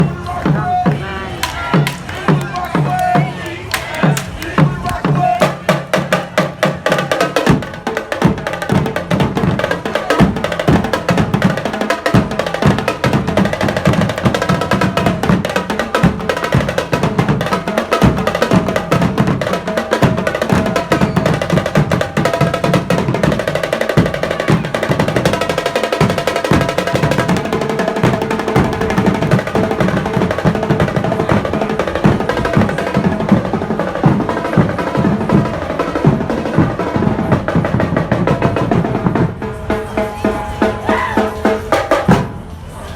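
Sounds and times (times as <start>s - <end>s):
fast drumming: 0.0s - 42.4s.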